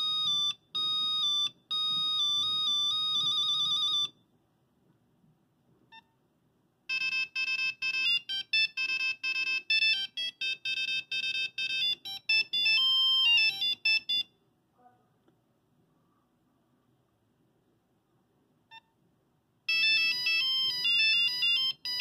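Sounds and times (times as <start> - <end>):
monophonic ringtone beeps: 0.0 - 4.2, 6.9 - 14.3, 19.7 - 22.0.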